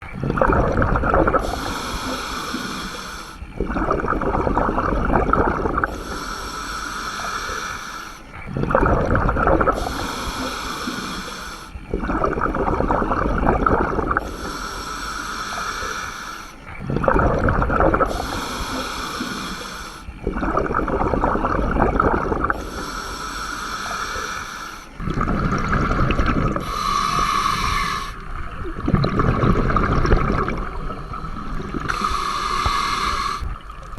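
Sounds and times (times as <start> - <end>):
exhaled bubbles underwater: 0.0 - 33.9
regulator inhale hiss: 1.4 - 3.4, 5.8 - 8.4, 9.7 - 11.9, 14.2 - 16.8, 18.0 - 20.1, 22.5 - 25.0, 26.4 - 28.3, 30.3 - 33.6.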